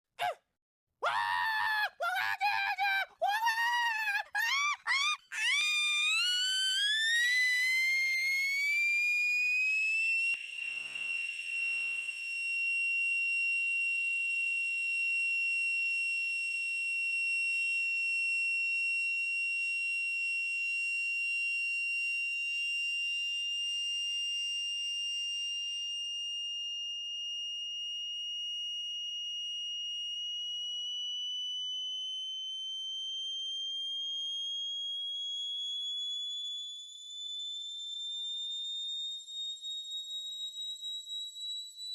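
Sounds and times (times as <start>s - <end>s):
cartoon high-pitched scream: 0.2s - 0.4s, 1.0s - 8.9s.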